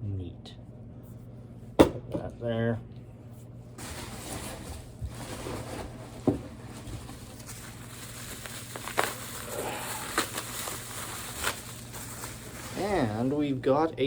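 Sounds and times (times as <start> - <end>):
packaging and cans rustling: 3.8 - 13.4.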